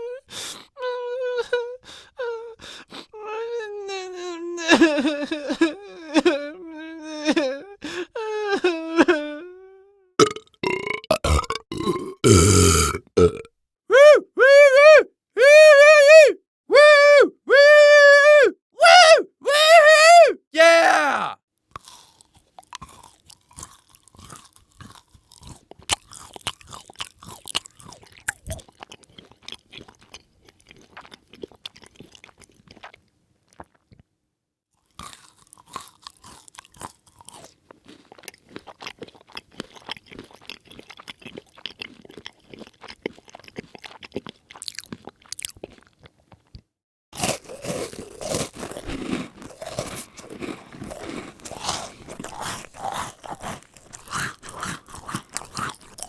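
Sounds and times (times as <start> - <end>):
person chewing crunchy food: 10.2 - 13.5, 21.7 - 34.1, 34.8 - 56.0.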